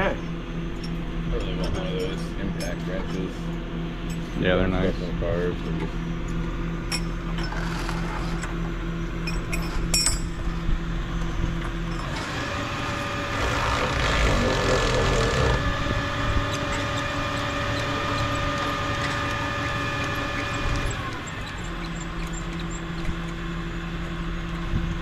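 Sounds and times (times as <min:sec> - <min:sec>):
low engine hum: 0:00.0 - 0:25.0
power tool whine: 0:11.6 - 0:24.7.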